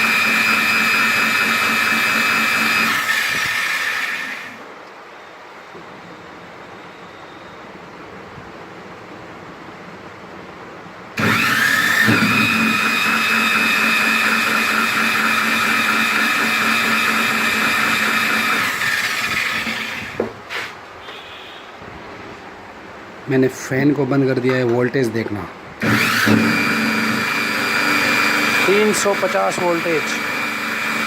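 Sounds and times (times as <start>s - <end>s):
electric motor whining: 0.0s - 4.6s, 11.2s - 20.2s, 25.8s - 31.0s.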